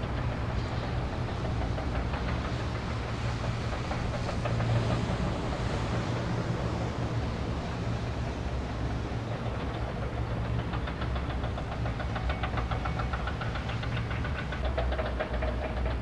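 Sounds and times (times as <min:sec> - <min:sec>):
fast ticking clatter: 0:00.0 - 0:16.0.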